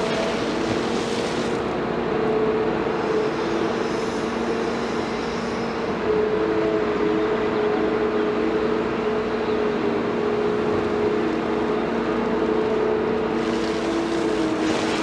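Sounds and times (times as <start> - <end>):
diesel engine running: 0.0 - 4.0, 6.1 - 15.0.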